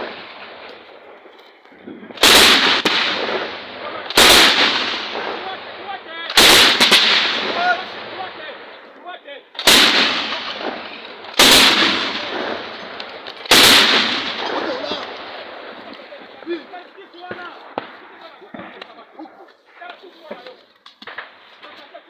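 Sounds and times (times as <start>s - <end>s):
gunshots with echo: 2.1s - 8.8s, 9.6s - 18.8s.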